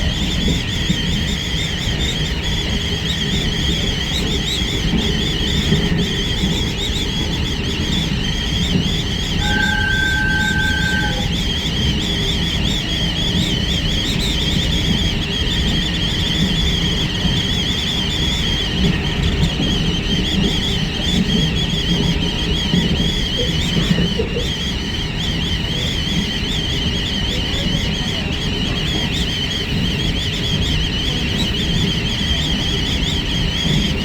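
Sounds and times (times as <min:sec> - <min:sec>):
train running rumble: 0:00.0 - 0:34.0
high wavering wind whistle: 0:07.8 - 0:12.7
brief steady tone: 0:09.4 - 0:11.9.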